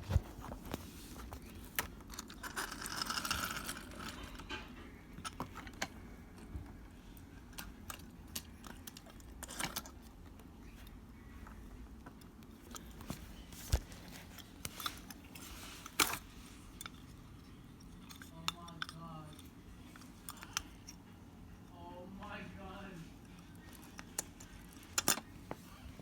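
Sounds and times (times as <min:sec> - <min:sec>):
plastic toy pieces clattering: 0:02.0 - 0:04.6.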